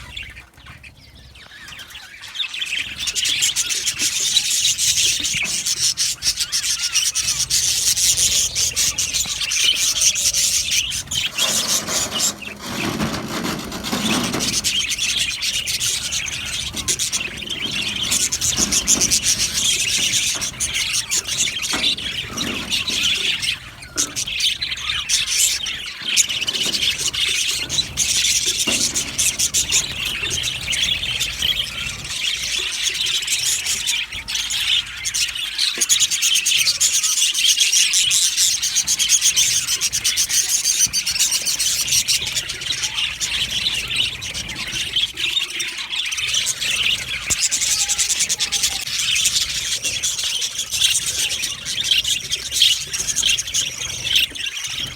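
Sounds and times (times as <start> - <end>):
budgerigars chattering and chirping: 0.0 - 54.9
low rough noise: 7.9 - 31.9.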